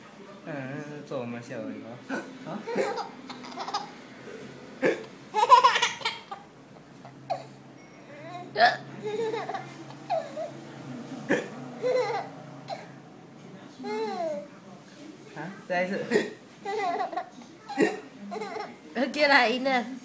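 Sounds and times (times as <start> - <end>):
baby laughing: 2.6 - 4.0, 4.8 - 6.5, 8.3 - 10.5, 11.3 - 12.8, 16.6 - 18.7.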